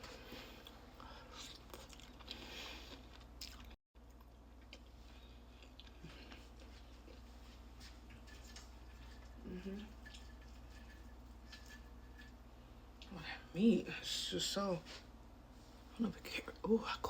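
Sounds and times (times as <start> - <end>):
chewing crispy food: 0.0 - 11.9.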